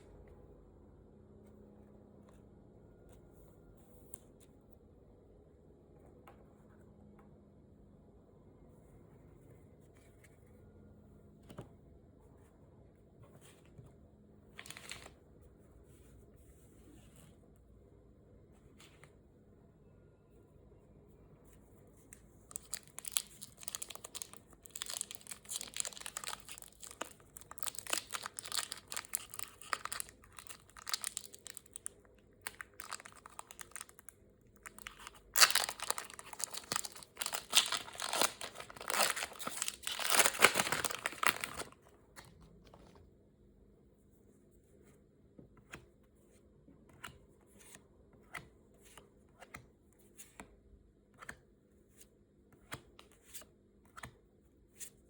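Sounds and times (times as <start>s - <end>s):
packaging tearing and crinkling: 22.5s - 41.8s.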